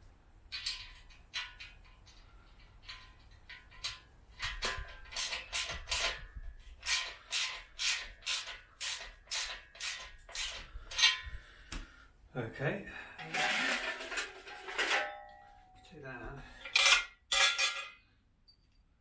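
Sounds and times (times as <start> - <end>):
ratchet spanner tightening a bolt: 0.5 - 11.2.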